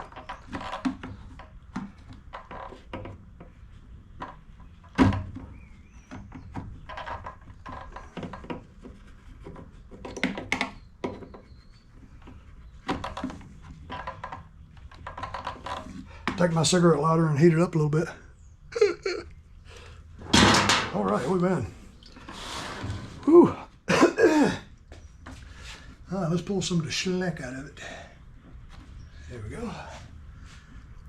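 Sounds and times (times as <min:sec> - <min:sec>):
loud thunk: 0:20.2 - 0:21.0.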